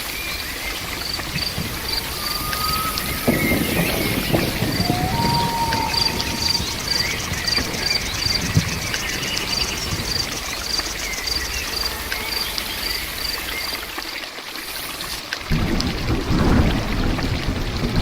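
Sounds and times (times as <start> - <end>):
high insect trill: 0.0 - 14.0
crickets chirping: 0.0 - 15.2
rain hissing: 0.0 - 18.0.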